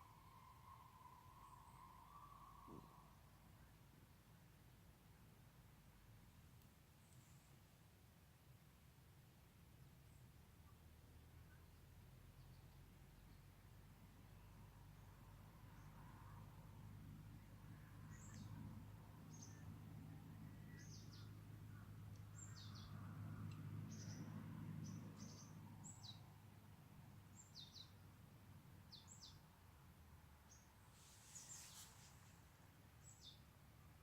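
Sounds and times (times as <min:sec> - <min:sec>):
brief rustle: 0:31.0 - 0:32.5.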